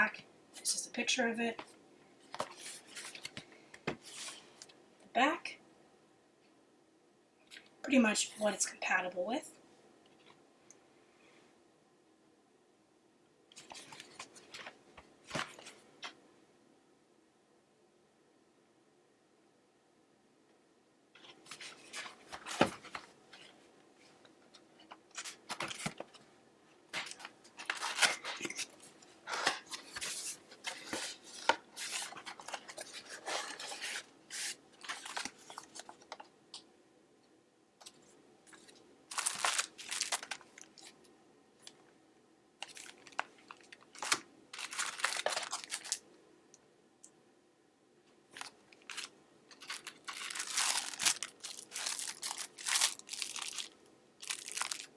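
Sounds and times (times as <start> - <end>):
packaging tearing and rustling: 25.1 - 26.2, 26.9 - 36.2, 37.8 - 41.0, 42.6 - 46.0, 48.3 - 54.9.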